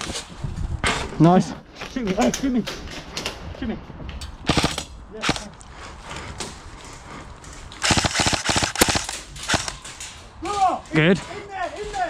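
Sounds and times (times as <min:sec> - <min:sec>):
airsoft gun shots: 0:07.8 - 0:09.8.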